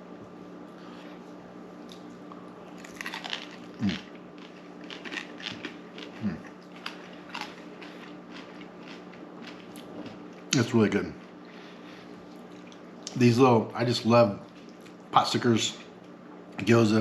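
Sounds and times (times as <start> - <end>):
faint steady hum: 0.0 - 17.0
person chewing crispy food: 1.8 - 13.1.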